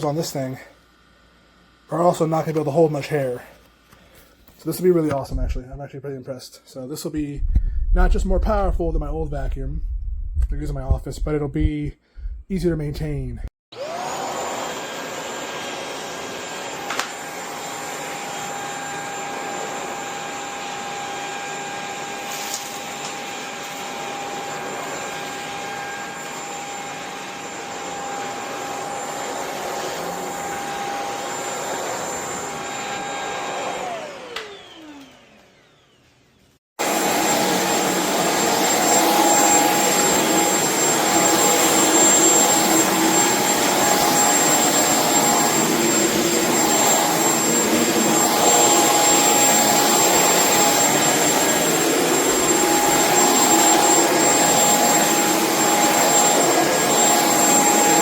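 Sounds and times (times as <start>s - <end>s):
stick vacuum motor whine: 13.8s - 58.0s.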